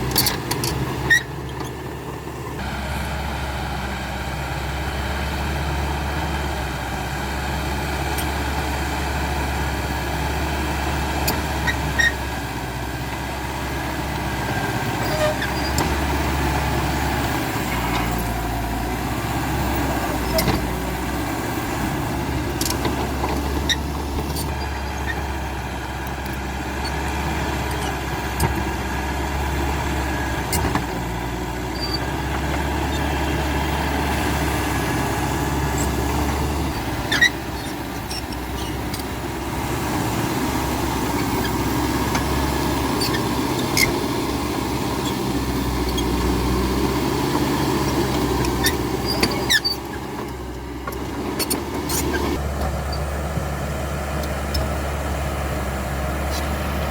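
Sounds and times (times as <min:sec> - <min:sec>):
bulldozer diesel engine running: 0:00.0 - 0:56.9
short sharp squeaks: 0:00.2 - 0:01.8, 0:22.5 - 0:25.2, 0:35.7 - 0:39.1, 0:43.0 - 0:43.9, 0:48.4 - 0:50.0, 0:51.4 - 0:53.1, 0:56.3 - 0:56.6.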